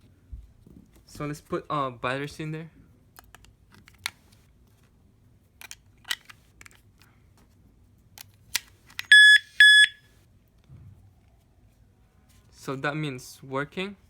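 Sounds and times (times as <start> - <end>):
electronic beeps: 9.1 - 10.0.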